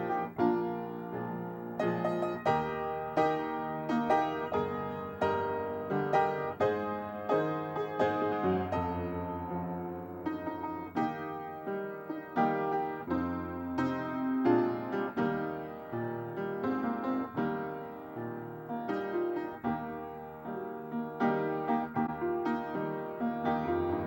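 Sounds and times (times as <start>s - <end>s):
slow piano chords: 0.0s - 24.0s.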